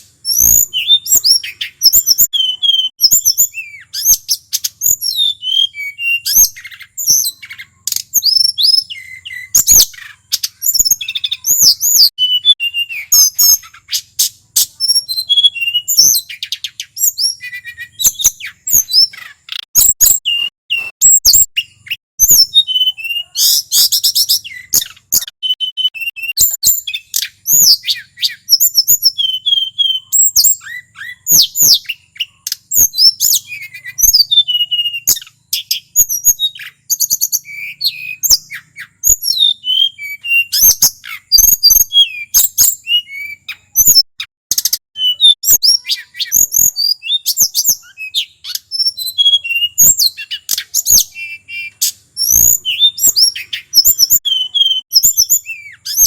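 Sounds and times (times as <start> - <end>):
bird singing whistled notes: 0.0 - 56.0.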